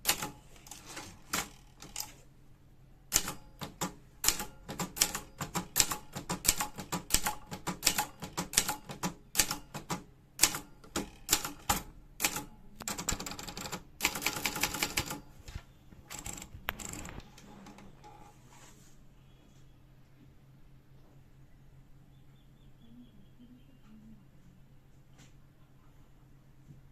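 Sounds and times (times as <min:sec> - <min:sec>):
typewriter mechanism rattling: 0:00.0 - 0:02.2, 0:16.1 - 0:17.8
typewriter keys clacking: 0:03.2 - 0:15.2, 0:16.1 - 0:17.5.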